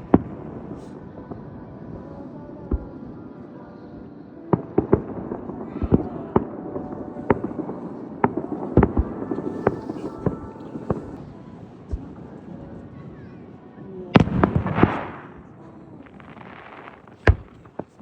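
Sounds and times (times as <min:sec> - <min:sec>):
firework shells bursting: 0:16.0 - 0:18.0.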